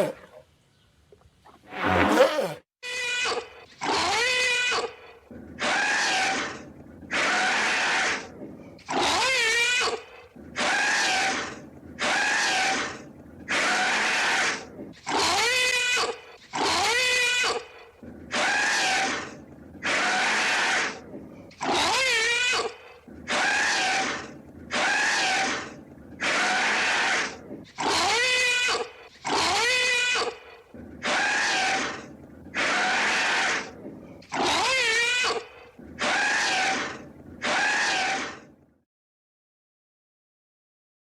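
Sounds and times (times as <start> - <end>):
elephant trumpeting: 0.0 - 0.4, 1.6 - 5.0, 34.3 - 38.4.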